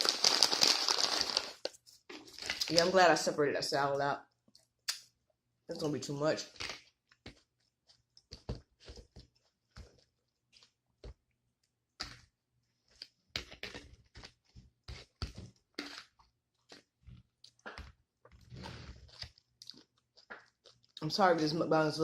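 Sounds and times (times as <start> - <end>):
chewing and crunching food: 6.4 - 21.0.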